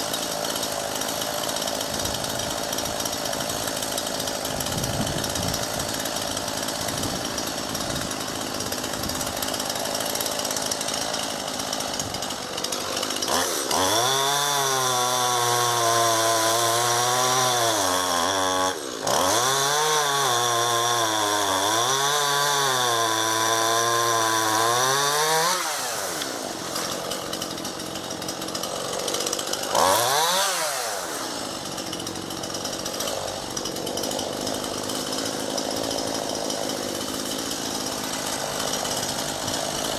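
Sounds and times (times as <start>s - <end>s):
chainsaw cutting branch: 0.0s - 39.9s.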